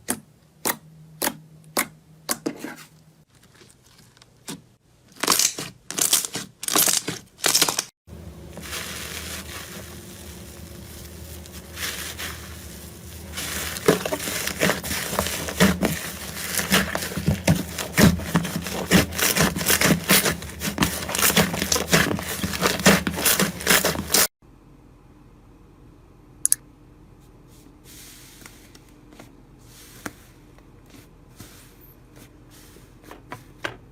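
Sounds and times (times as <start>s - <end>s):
steady low hum: 8.1s - 33.0s.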